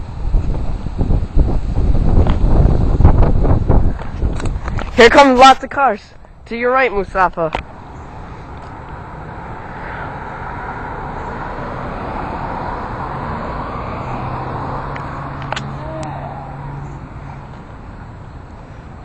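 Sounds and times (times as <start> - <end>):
low steady engine hum: 6.2 - 19.0
cars driving past: 7.5 - 19.0.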